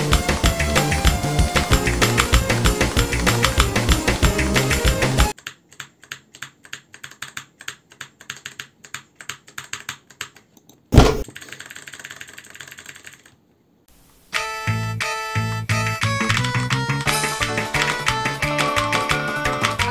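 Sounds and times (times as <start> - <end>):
background music: 0.0 - 5.4, 14.4 - 19.9
mechanical keyboard typing: 0.0 - 10.5, 11.2 - 13.4, 15.9 - 19.9
loud thump: 10.9 - 11.3.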